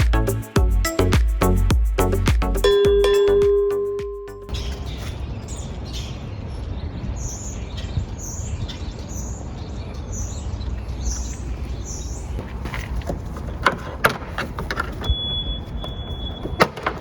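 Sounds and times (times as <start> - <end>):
small bird chirping: 4.3 - 12.4.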